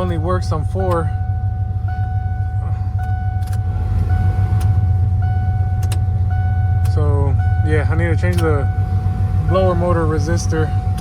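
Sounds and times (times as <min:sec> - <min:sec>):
truck exhaust droning: 0:00.0 - 0:11.0
sharp clicks: 0:05.8 - 0:06.1.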